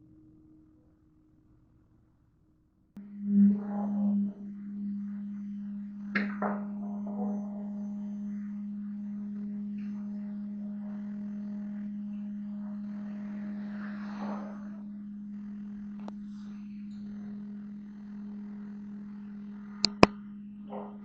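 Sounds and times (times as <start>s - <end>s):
machinery humming: 3.0s - 21.0s.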